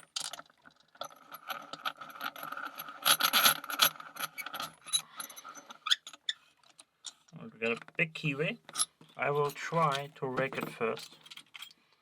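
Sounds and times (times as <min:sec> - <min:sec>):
metal padlock rattling and scraping: 0:00.0 - 0:07.9, 0:08.6 - 0:11.8.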